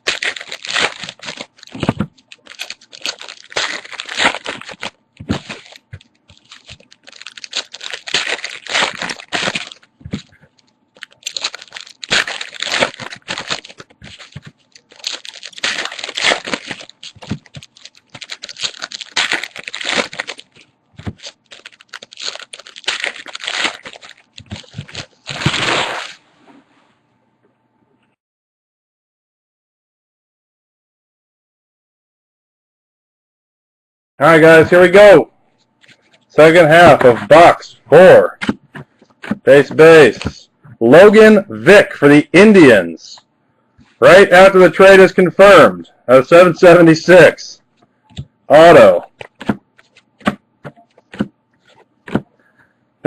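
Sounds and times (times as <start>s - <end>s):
foil wrappers tearing and crinkling: 0.0s - 26.2s, 48.6s - 52.3s.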